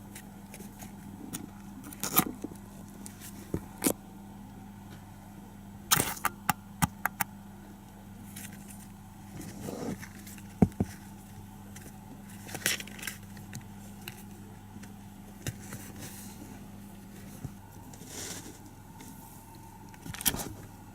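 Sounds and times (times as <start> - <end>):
scratchy rustles: 15.5 - 19.3.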